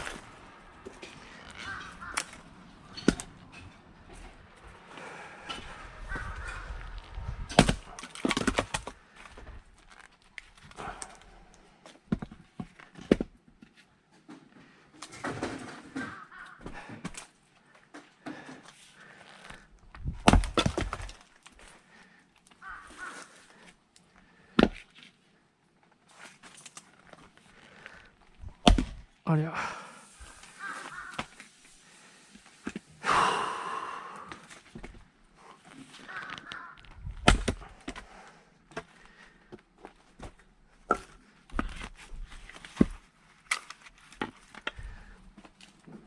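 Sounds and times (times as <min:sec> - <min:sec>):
firewood cracking when split: 0:00.0 - 0:03.4, 0:05.5 - 0:11.4, 0:18.4 - 0:24.9, 0:35.9 - 0:39.3
person breathing: 0:04.7 - 0:06.1, 0:29.5 - 0:30.8, 0:31.7 - 0:34.6, 0:37.6 - 0:39.6, 0:44.6 - 0:45.4.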